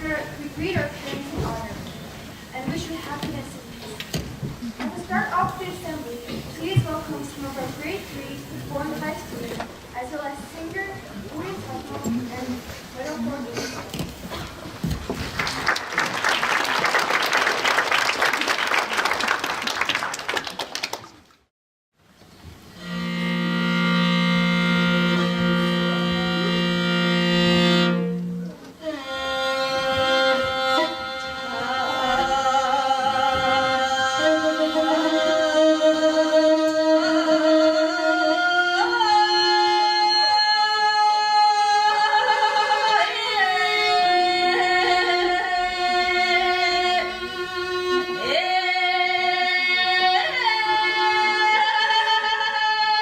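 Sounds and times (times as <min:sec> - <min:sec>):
bowed string instrument: 0:22.6 - 0:52.3
person singing with vibrato: 0:22.8 - 0:53.0.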